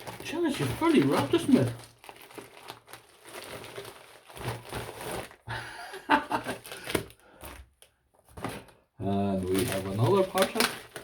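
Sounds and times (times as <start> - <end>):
parcel wrapping rustling and tearing: 0.0 - 11.0.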